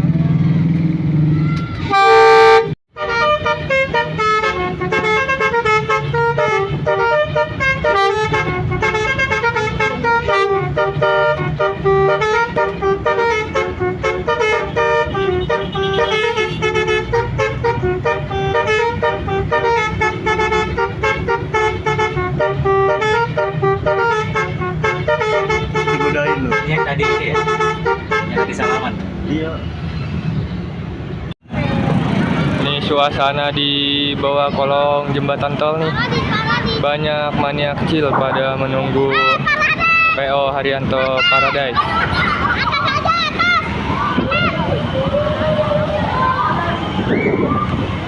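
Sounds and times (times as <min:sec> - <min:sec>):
bus engine hum: 0:00.0 - 0:48.0
bus melody horn: 0:01.8 - 0:29.0.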